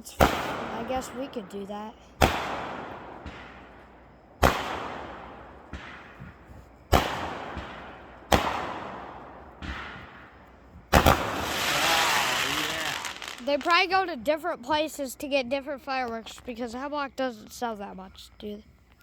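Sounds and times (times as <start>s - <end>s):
fireworks bangs with rumbling echo: 0.0s - 14.0s
small firework pops: 0.1s - 1.2s, 2.2s - 13.8s.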